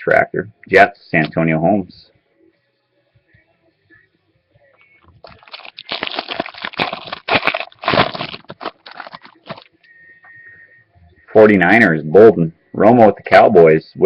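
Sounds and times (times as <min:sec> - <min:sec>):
foil wrapper crinkling: 0:05.2 - 0:09.8.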